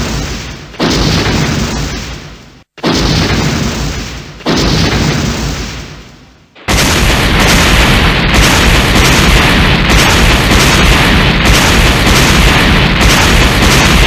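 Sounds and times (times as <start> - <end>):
loud explosion-like rumble: 6.6 - 14.0.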